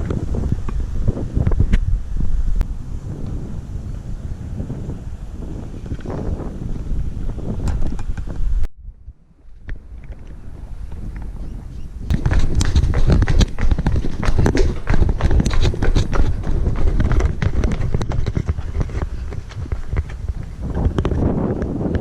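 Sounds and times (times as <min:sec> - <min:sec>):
wind rumble on microphone: 0:00.0 - 0:22.0
quick footsteps on a trail: 0:09.7 - 0:22.0.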